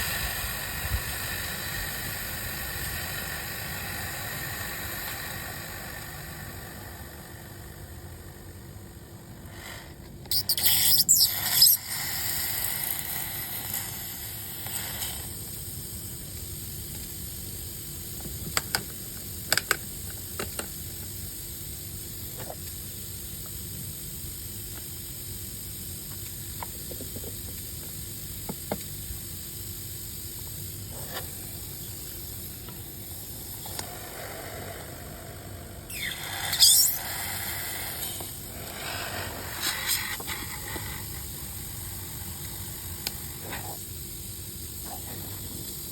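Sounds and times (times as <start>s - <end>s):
steady low hum: 0.0s - 10.3s, 20.9s - 45.9s
pressurised gas hissing: 0.0s - 45.9s.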